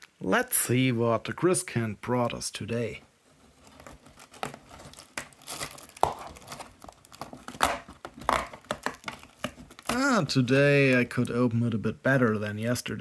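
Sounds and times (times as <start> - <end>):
cardboard tearing and crinkling: 3.4 - 11.3.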